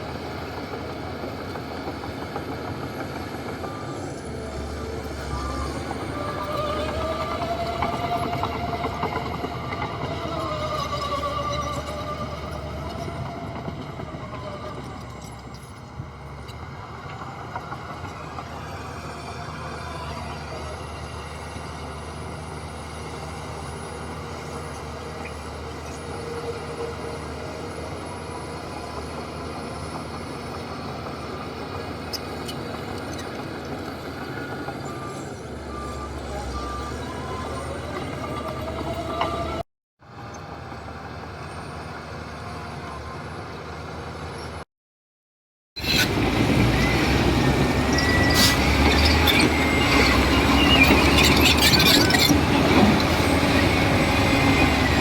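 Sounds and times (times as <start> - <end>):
heavy machinery diesel engines: 0.0 - 44.6, 45.8 - 55.0
reversing alarm beeping: 34.3 - 39.6, 47.2 - 55.0.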